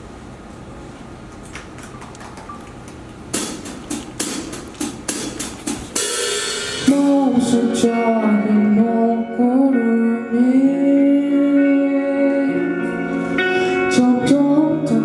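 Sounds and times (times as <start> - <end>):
drumstick count-in clicks: 2.4 - 5.9
cymbal wash: 3.4 - 15.0.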